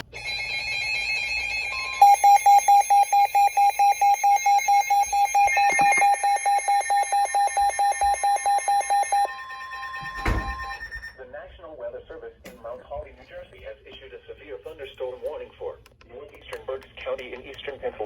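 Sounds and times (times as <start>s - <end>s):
steady radio alert tone: 0.0s - 12.0s
rapid alarm beeping: 0.2s - 11.2s.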